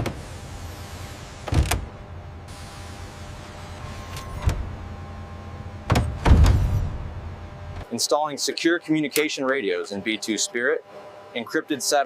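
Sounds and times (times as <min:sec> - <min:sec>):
electrical hum with low rumble: 0:00.0 - 0:12.0
mechanical clunks: 0:01.4 - 0:02.1, 0:03.8 - 0:04.9, 0:05.7 - 0:07.9.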